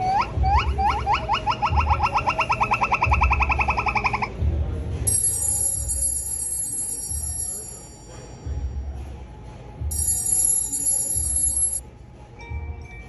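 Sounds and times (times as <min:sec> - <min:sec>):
low pulsing beat: 0:00.0 - 0:06.2
rising tone ringtone: 0:05.1 - 0:08.1, 0:09.9 - 0:11.8
high bright chime: 0:09.9 - 0:11.8.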